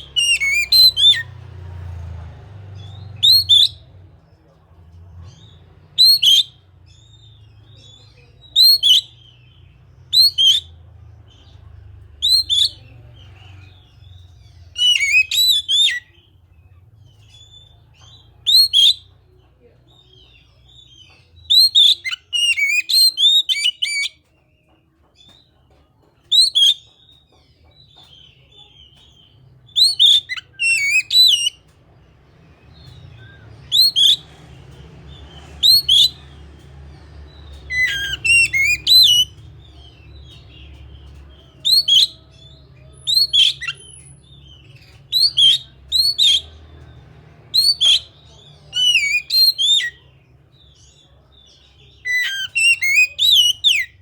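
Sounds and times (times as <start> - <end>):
bird singing whistled phrases: 0.0 - 1.3, 3.2 - 3.9, 6.0 - 6.6, 8.4 - 9.5, 10.1 - 10.7, 12.2 - 12.8, 14.7 - 16.2, 18.4 - 19.1, 20.7 - 24.2, 26.3 - 26.9, 29.7 - 31.6, 32.8 - 34.3, 35.6 - 36.2, 37.6 - 39.7, 41.6 - 46.5, 47.5 - 50.0, 51.5 - 54.0.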